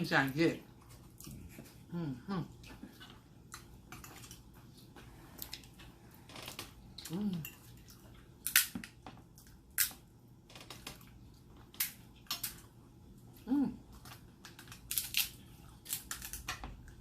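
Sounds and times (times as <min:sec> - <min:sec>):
crab shell cracking: 0:14.4 - 0:16.7.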